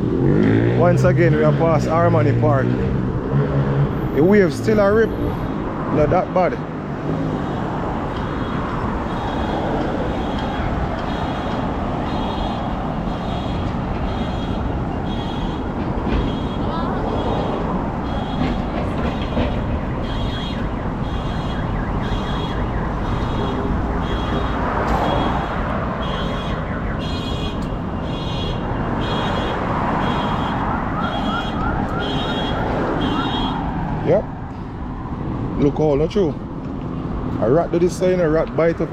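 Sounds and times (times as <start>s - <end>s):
vehicle road and wind noise: 0.0s - 38.9s.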